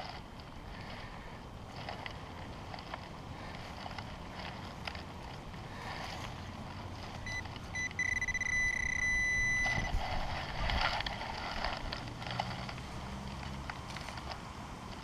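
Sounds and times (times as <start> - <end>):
tools scraping in soil: 0.0 - 15.0
metal detector pinpointer beeping: 7.2 - 10.0
wind on microphone: 9.5 - 12.1.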